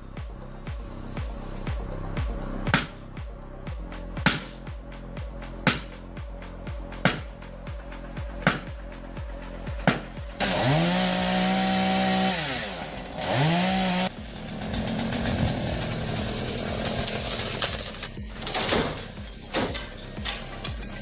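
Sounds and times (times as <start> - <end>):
background music: 0.0 - 21.0
chainsaw revving: 10.4 - 19.2.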